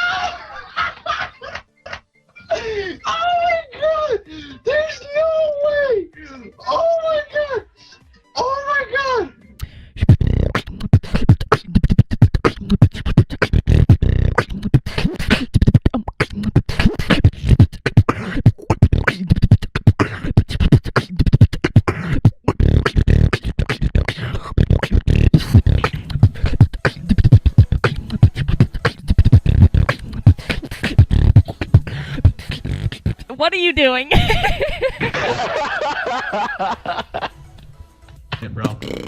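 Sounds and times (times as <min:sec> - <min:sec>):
person beatboxing: 0:09.6 - 0:33.4, 0:38.3 - 0:39.0.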